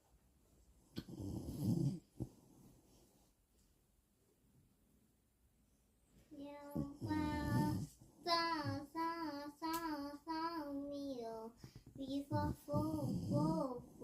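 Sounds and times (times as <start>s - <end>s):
child singing: 6.3s - 13.9s.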